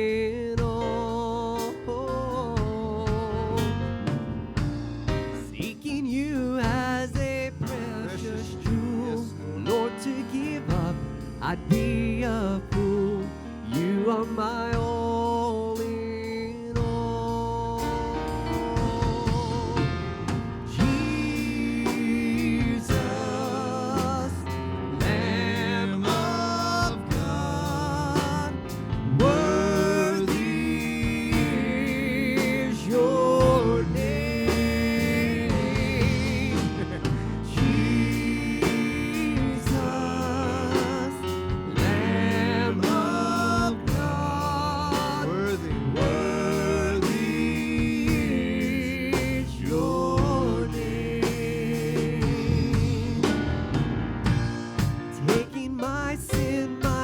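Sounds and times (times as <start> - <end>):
band playing worship song: 0.0 - 57.0
people singing: 0.0 - 57.0.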